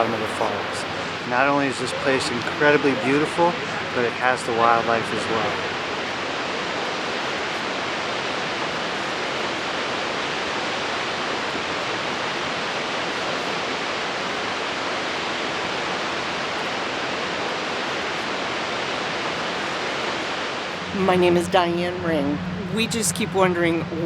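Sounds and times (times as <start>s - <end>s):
waterfall rushing: 0.0s - 21.2s.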